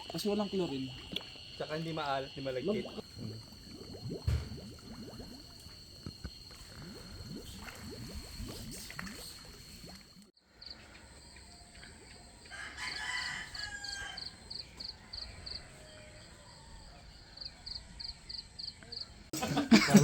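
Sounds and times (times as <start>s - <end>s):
rooster crowing: 12.5s - 14.4s, 15.0s - 17.6s.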